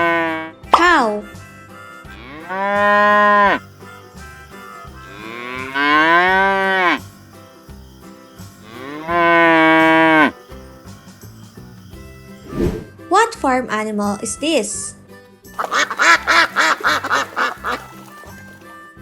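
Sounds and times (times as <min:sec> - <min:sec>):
cow mooing: 0:02.1 - 0:03.6, 0:04.8 - 0:07.1, 0:08.6 - 0:10.4.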